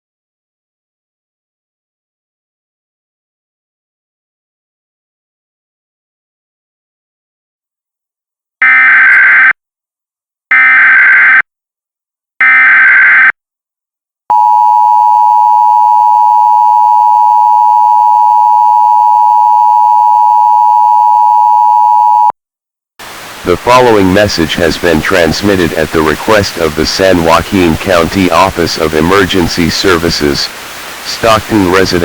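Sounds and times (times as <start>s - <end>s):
loud attention tone: 14.3s - 22.3s.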